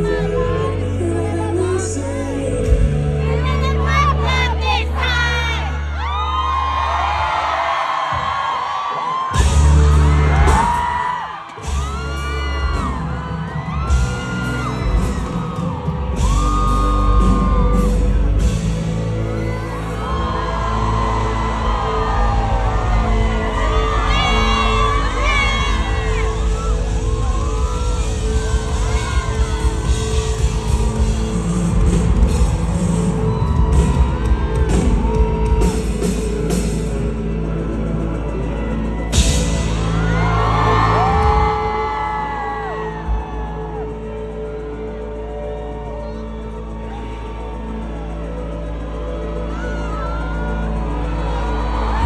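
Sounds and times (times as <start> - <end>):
drums: 0.0 - 4.3, 5.6 - 52.0
live pop band playing: 0.0 - 4.8, 9.2 - 43.7
audience whooping: 4.7 - 36.6, 39.1 - 52.0.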